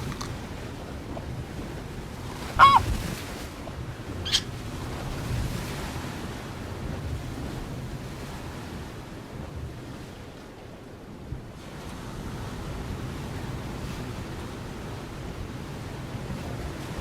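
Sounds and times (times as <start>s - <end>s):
wind: 0.0s - 17.0s
bird calling harshly: 2.6s - 2.9s, 4.2s - 4.5s.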